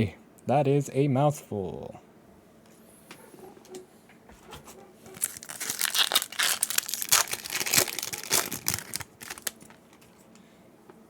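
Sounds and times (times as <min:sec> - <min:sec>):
foil wrapper tearing and crinkling: 0:05.1 - 0:10.1.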